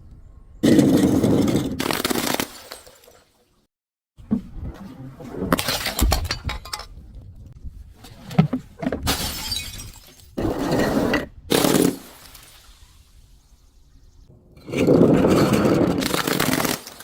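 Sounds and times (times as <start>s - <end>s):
glass bottle shattering: 1.7s - 3.2s, 9.1s - 10.4s, 11.5s - 12.8s
glass being crushed: 9.1s - 10.4s, 16.0s - 17.0s.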